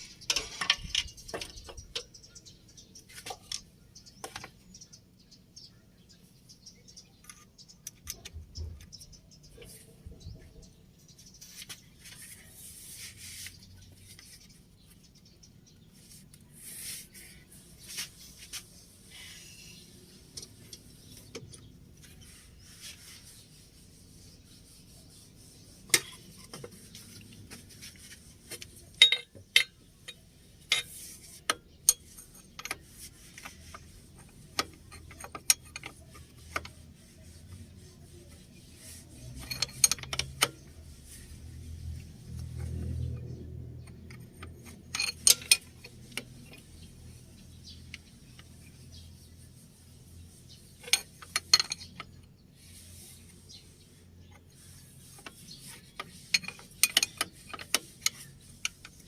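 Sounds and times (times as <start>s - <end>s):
rasping metal scraping: 16.0s - 59.0s.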